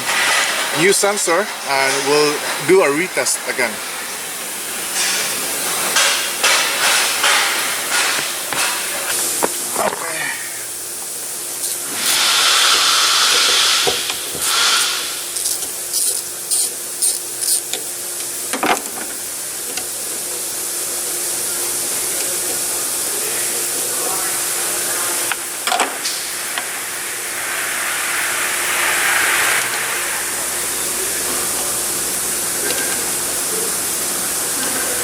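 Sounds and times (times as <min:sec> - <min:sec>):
smoke machine hissing: 0:00.0 - 0:35.0.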